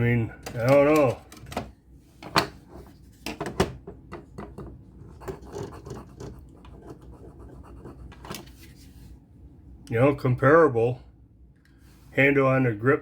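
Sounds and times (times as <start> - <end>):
scratchy rubbing: 5.1 - 8.9.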